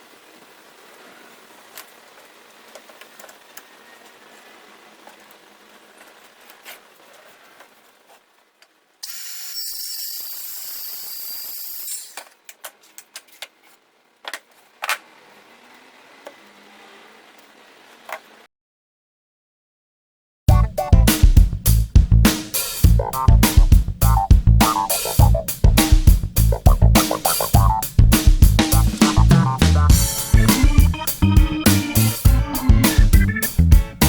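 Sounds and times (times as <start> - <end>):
steady hiss: 21.6 - 34.0.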